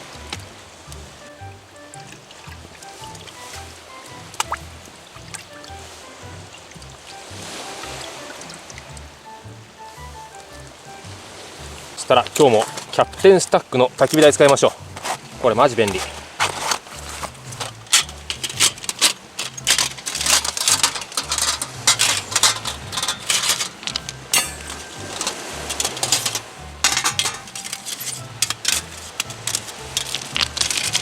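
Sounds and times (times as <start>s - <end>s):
background music with bass line: 0.0s - 31.0s
metallic clinks and clatter: 17.5s - 31.0s.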